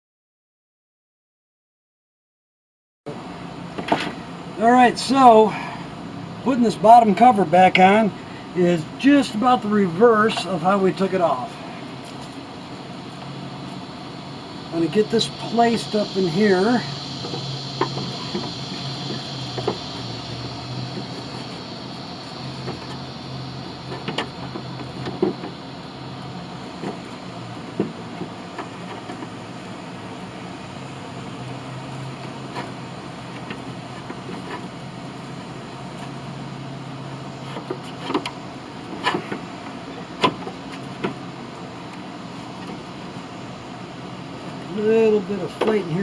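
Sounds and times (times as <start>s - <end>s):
low hum: 11.2s - 31.6s.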